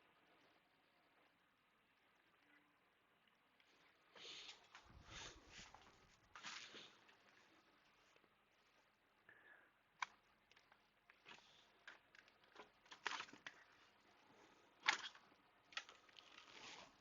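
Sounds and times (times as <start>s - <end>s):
small parts clicking: 10.0s - 13.8s, 14.8s - 16.9s.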